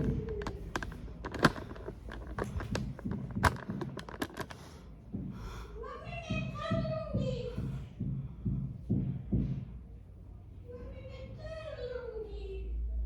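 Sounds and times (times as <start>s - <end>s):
light clicks and taps: 0.0s - 4.8s
sharp clacks: 0.0s - 4.8s.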